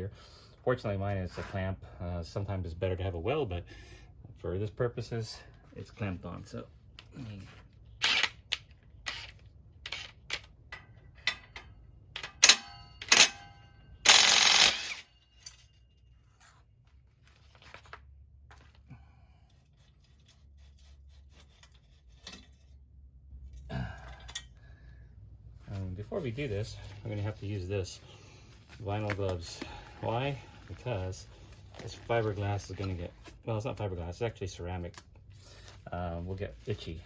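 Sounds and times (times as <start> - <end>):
metal tool clicks and clanks: 8.0 - 15.8.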